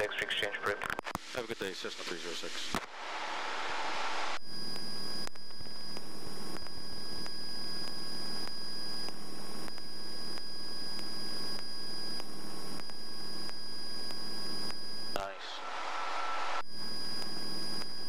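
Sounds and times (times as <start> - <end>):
thin high whine: 1.3 - 18.0.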